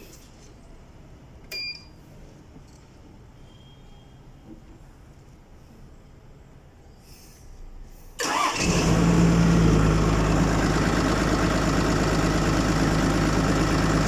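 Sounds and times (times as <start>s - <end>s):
diesel engine starting and idling: 8.2s - 14.0s.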